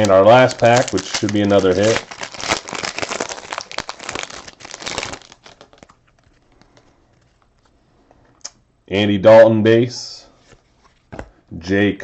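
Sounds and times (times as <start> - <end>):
foil pack tearing and crinkling: 0.0 - 5.9.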